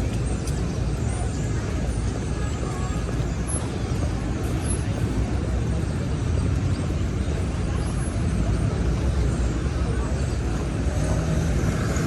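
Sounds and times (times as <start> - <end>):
street traffic rumble: 0.0 - 12.0.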